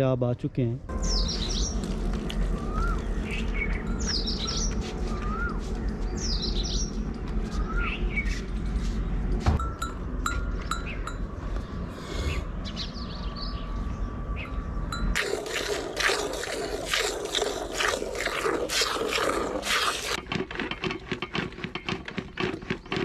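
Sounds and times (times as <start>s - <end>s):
steady low rumble: 0.7s - 15.5s
birds chirping: 0.9s - 15.2s.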